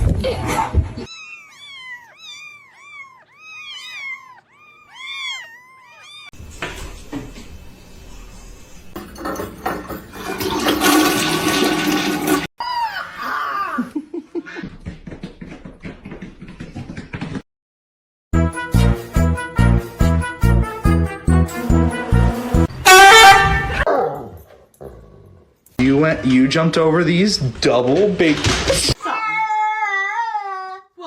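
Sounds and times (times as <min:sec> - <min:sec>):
cat meowing: 0:01.1 - 0:06.4, 0:29.0 - 0:30.9
toilet flushing: 0:09.0 - 0:12.5.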